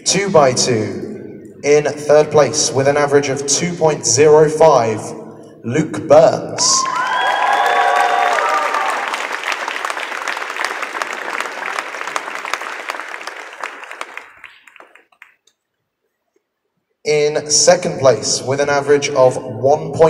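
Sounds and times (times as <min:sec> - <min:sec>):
people cheering: 0:06.6 - 0:15.0
audience applauding: 0:06.8 - 0:15.4.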